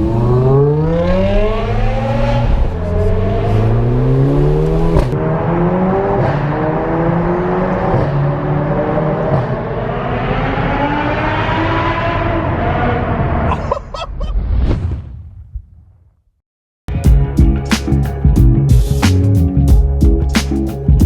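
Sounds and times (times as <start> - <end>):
car engine accelerating hard: 0.0 - 13.5.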